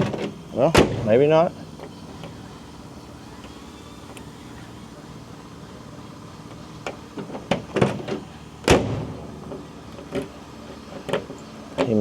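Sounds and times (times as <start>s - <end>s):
car door clunk: 0.0s - 1.2s, 6.8s - 11.9s.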